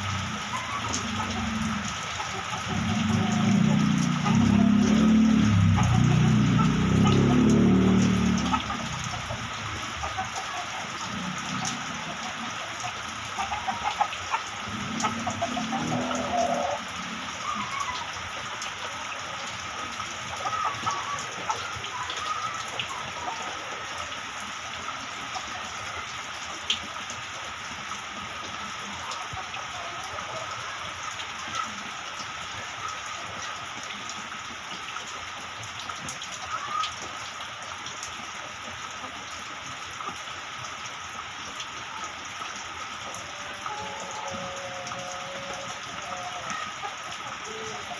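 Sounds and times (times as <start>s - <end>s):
light rain falling: 0.0s - 47.9s
faint calls or voices: 42.9s - 47.9s.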